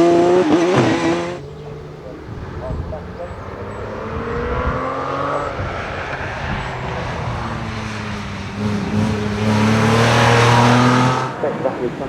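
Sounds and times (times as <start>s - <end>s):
race car engine at high revs: 0.0s - 12.0s.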